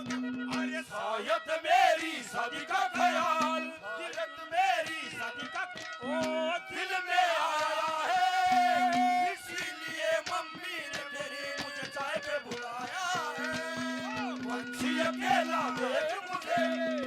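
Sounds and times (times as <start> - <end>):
held drone note: 13.4 - 16.0
wavering melodic line: 13.4 - 16.0.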